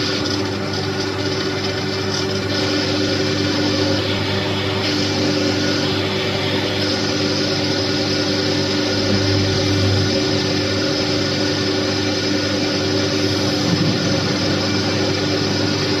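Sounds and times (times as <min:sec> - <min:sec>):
industrial machinery humming: 0:00.0 - 0:16.0.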